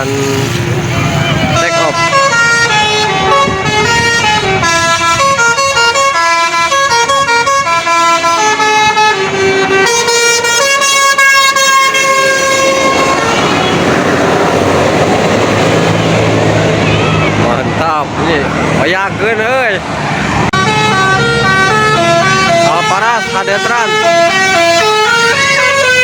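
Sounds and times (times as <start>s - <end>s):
musical bus horn tune: 0.0s - 15.0s, 20.5s - 26.0s
bus driving off: 0.0s - 22.8s.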